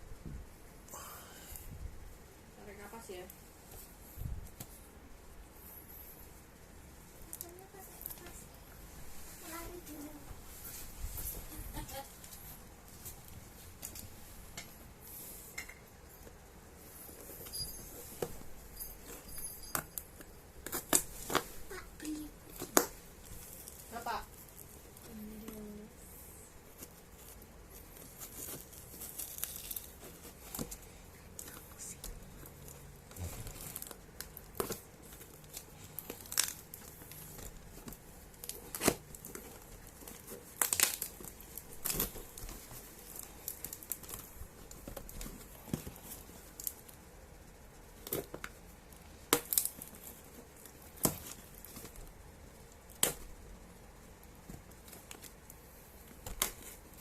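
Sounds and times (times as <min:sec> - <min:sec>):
packaging tearing and crinkling: 0:28.0 - 0:30.7, 0:33.4 - 0:47.0.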